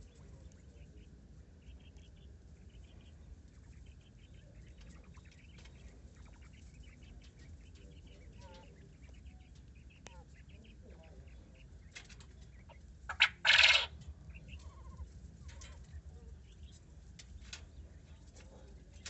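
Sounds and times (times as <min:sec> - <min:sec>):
low steady hum: 0:00.0 - 0:19.0
quail chirping trills: 0:00.0 - 0:19.0
quail falling calls: 0:12.6 - 0:15.6.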